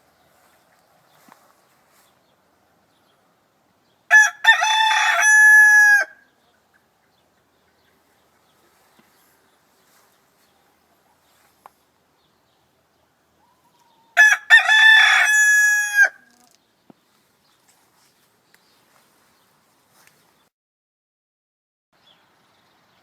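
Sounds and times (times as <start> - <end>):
rooster crowing: 4.1 - 6.2, 13.6 - 16.4.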